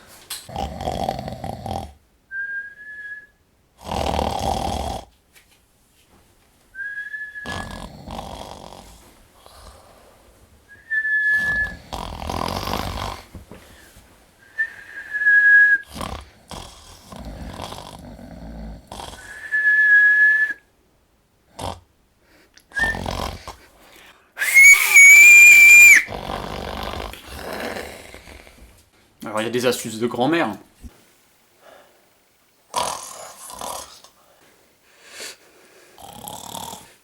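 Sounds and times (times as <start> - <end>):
person snoring: 0.5 - 2.0, 3.8 - 5.1, 7.4 - 10.0, 11.4 - 13.3, 15.8 - 19.6, 26.0 - 28.6, 32.7 - 34.1, 35.2 - 37.0
person whistling: 2.3 - 3.3, 6.8 - 7.7, 10.7 - 11.8, 14.5 - 15.8, 19.3 - 20.6, 24.4 - 26.1.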